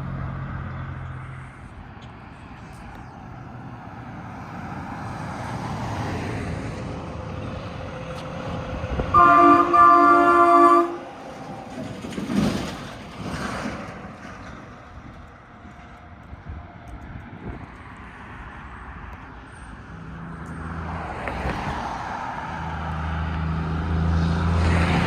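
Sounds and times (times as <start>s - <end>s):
road noise from passing vehicles: 0.0s - 25.0s
truck air horn chord: 9.1s - 11.2s.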